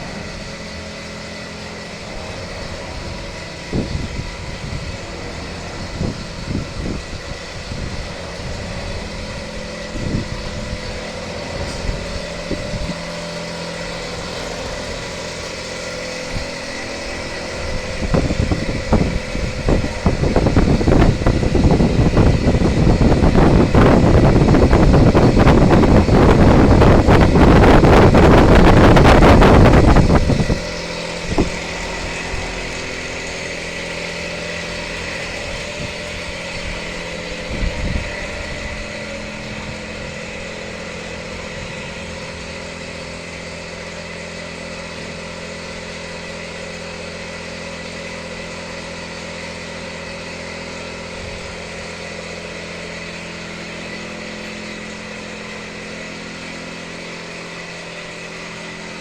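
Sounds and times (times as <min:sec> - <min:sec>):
loud rushing noise: 0:00.0 - 0:43.0
lathe running with high whine: 0:00.0 - 0:59.0.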